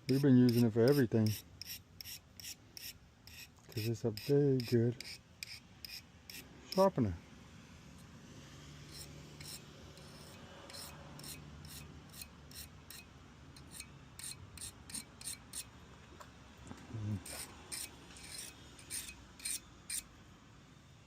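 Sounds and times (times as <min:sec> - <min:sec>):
knife rasping on sharpener: 0:00.1 - 0:06.9, 0:08.9 - 0:15.7, 0:17.2 - 0:20.1.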